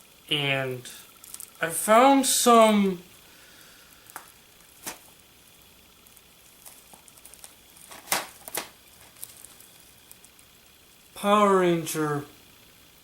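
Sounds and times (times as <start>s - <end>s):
light crinkling: 1.1s - 1.6s, 3.9s - 11.1s.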